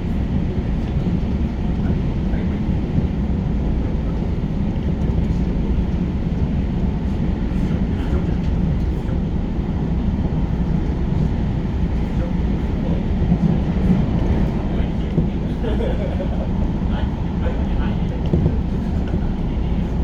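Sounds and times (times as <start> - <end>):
train wheels rumbling on rail: 0.0 - 20.0.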